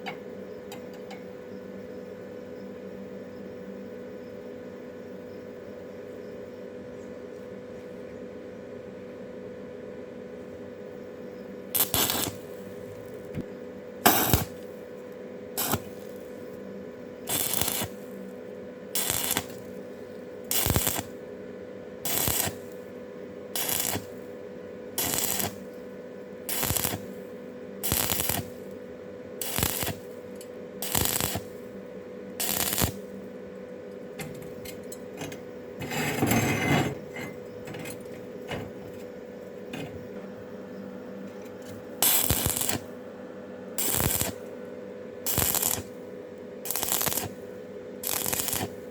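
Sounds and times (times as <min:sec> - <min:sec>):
steady hum: 0:10.3 - 0:48.9
crackling welding arc: 0:11.7 - 0:13.4, 0:14.1 - 0:14.7, 0:15.6 - 0:16.5, 0:17.2 - 0:19.8, 0:20.5 - 0:21.2, 0:22.0 - 0:22.8, 0:23.5 - 0:24.3, 0:25.0 - 0:25.7, 0:26.4 - 0:27.2, 0:27.8 - 0:28.8, 0:29.4 - 0:31.6, 0:32.4 - 0:33.0, 0:42.0 - 0:43.0, 0:43.8 - 0:44.5, 0:45.2 - 0:46.0, 0:46.6 - 0:48.9.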